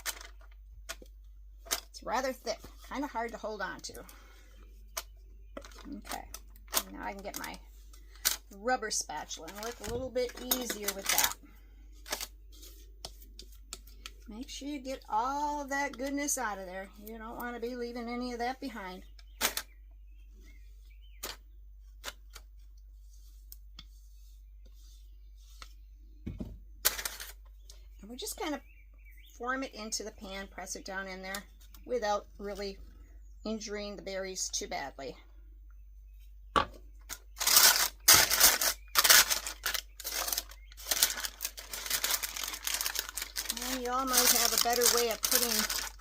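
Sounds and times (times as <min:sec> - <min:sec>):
parchment paper crinkling: 0:00.0 - 0:17.7, 0:37.1 - 0:46.0.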